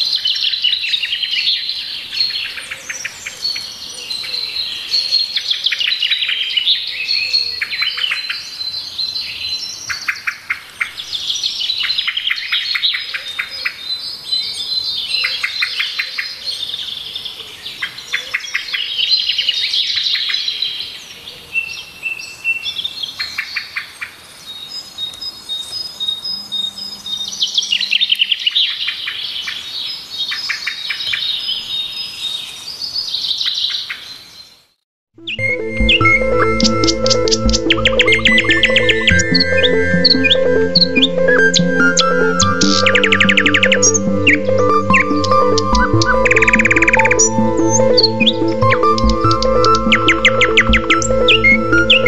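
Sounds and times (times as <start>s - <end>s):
high whistled bird notes: 35.2s - 52.0s
small birds chirping: 35.3s - 52.0s.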